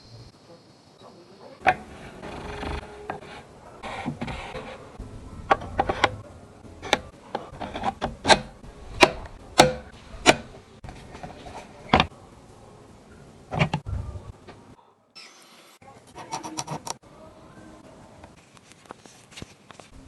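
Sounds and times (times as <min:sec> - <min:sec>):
scraping rubbing noise: 0:01.6 - 0:12.1.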